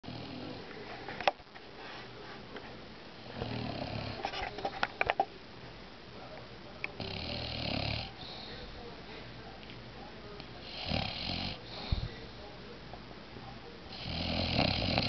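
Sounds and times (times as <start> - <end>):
dog snoring: 3.4 - 4.3, 7.0 - 8.5, 10.6 - 12.1, 13.9 - 15.0.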